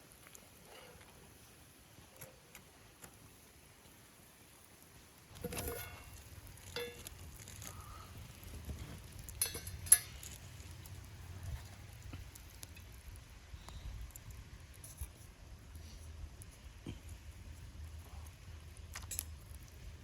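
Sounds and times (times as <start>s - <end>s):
utensils clinking on cookware: 5.4s - 7.1s, 9.4s - 10.2s.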